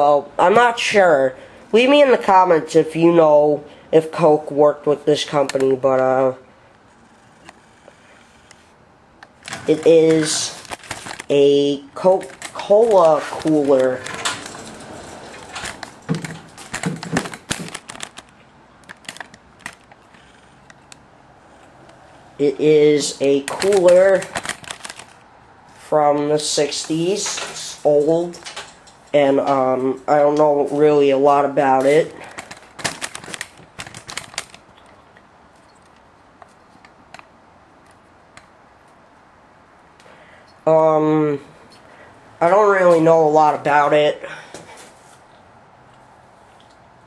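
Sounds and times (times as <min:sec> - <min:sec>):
handling clicks and knocks: 0:09.2 - 0:11.4, 0:12.0 - 0:22.1, 0:23.2 - 0:25.2, 0:26.7 - 0:30.5, 0:31.7 - 0:38.5.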